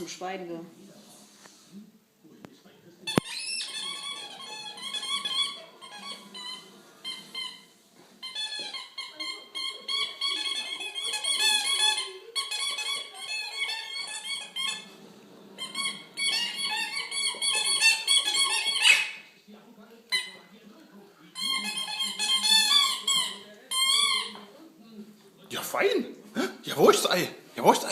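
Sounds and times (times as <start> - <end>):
squeaky dog toy squeaking: 3.1 - 14.9, 15.6 - 19.3, 20.1 - 20.4, 21.3 - 24.4.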